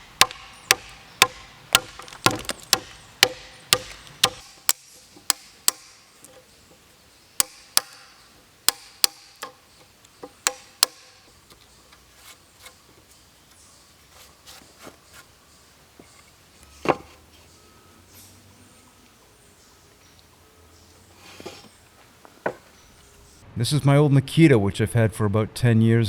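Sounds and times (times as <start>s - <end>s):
hammer striking a chisel: 0.2s - 6.0s, 7.4s - 9.6s, 10.2s - 11.3s.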